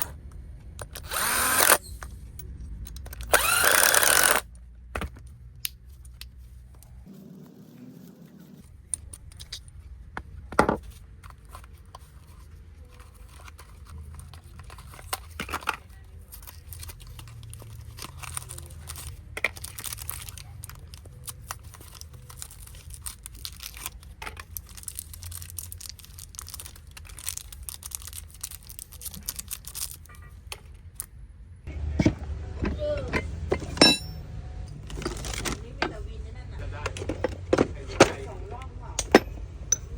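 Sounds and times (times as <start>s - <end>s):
objects handled with clicks and crinkling: 0.0s - 7.1s, 8.4s - 31.2s, 34.6s - 39.9s.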